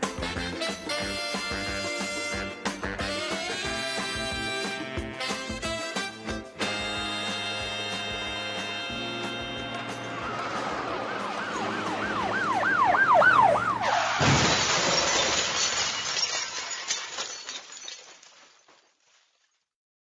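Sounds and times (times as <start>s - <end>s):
music: 0.0s - 13.2s
siren-like wail: 10.0s - 14.2s
crash like smashing glass: 13.8s - 19.7s.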